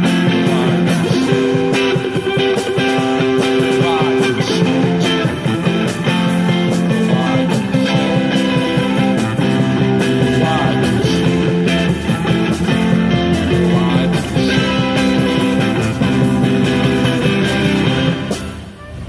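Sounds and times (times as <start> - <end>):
bucket drumming: 0.0 - 19.0
guitar: 0.0 - 19.0
clarinet: 18.0 - 19.0.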